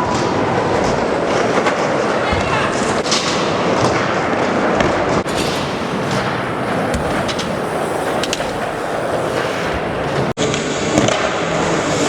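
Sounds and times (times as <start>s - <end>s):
bike tyres rolling on concrete: 5.2s - 10.4s.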